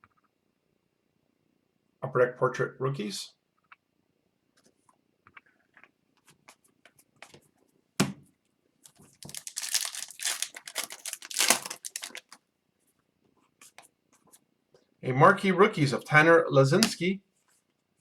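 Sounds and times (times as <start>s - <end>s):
foil wrapper crinkling and tearing: 9.1s - 12.4s
cards ticking: 9.2s - 12.4s.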